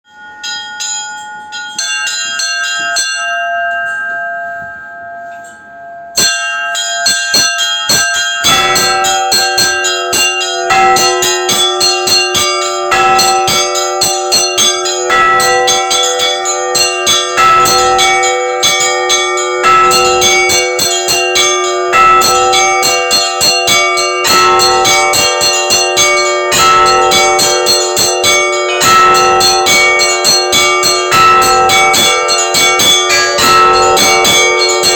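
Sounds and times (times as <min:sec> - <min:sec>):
church bells struck singly: 0:00.0 - 0:34.9
small bells chiming fast: 0:00.0 - 0:34.9
large deep bell struck: 0:07.4 - 0:34.9.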